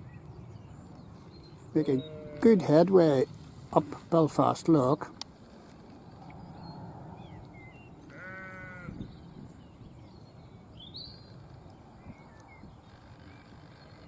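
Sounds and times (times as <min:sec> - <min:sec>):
sheep bleating: 0:01.8 - 0:02.7, 0:08.1 - 0:08.9.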